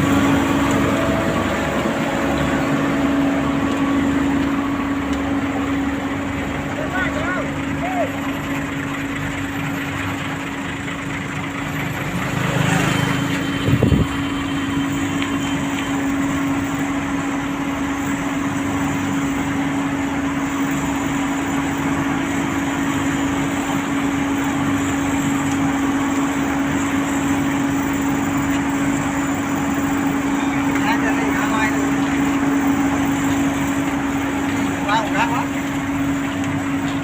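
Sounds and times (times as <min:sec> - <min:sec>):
paving machine engine humming: 0:00.0 - 0:37.0.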